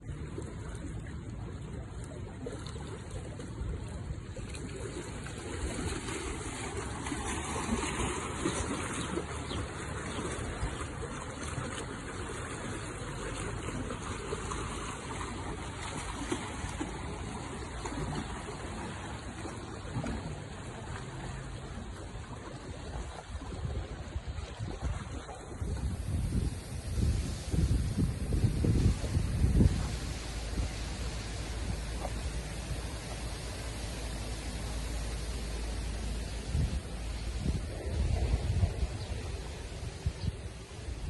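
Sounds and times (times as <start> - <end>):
wind rustling tree leaves: 22.6 - 41.0.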